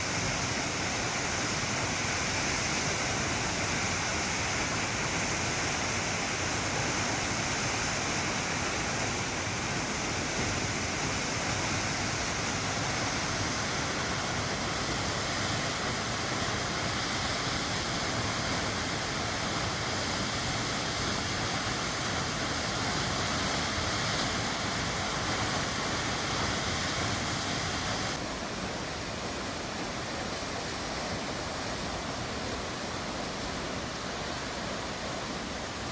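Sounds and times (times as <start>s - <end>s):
waterfall rushing: 0.0s - 35.9s.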